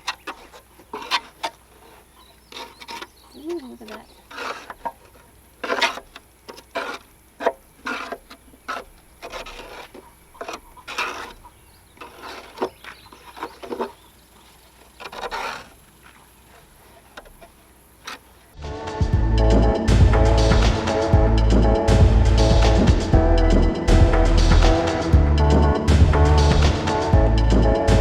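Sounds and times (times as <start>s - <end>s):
hand scraping mower deck: 0.0s - 18.6s.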